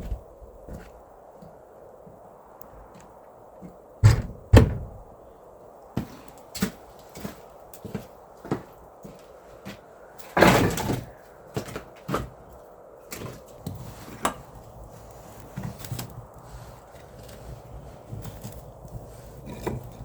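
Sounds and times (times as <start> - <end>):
knocks and clunks: 4.0 - 5.1
scraping clatter: 17.0 - 20.0.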